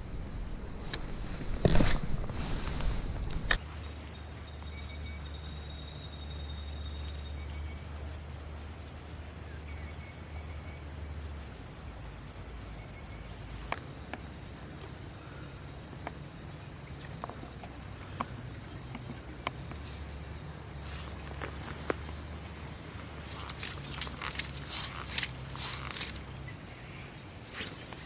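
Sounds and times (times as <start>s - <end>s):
low steady rumble: 0.0s - 28.0s
sharp clicks: 23.3s - 26.5s
high bird chirps: 27.5s - 28.0s.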